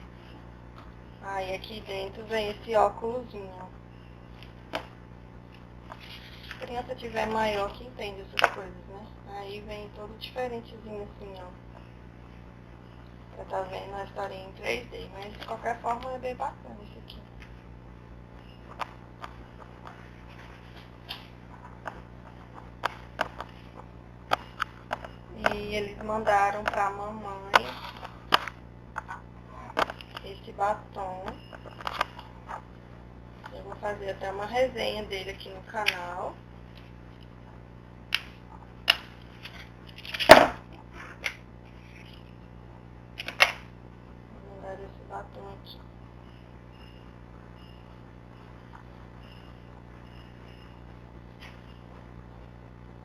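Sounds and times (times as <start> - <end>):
low steady hum: 0.0 - 53.0.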